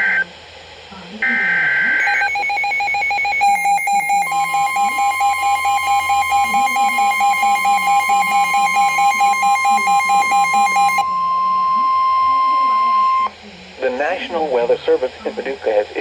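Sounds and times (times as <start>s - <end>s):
rapid electronic beeping: 0.0s - 0.2s, 1.2s - 13.4s
steady alarm tone: 0.0s - 0.2s, 1.2s - 13.4s.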